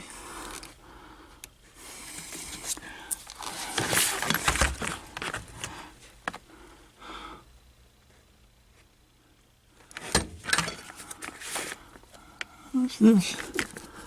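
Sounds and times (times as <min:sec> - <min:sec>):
scraping and rustling handling noises: 0:02.1 - 0:06.4, 0:09.9 - 0:12.2, 0:13.0 - 0:14.0.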